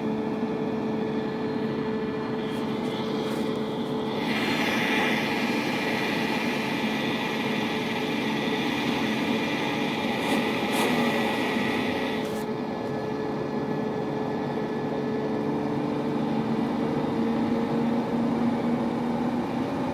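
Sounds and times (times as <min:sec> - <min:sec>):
high whine: 0:02.1 - 0:12.4.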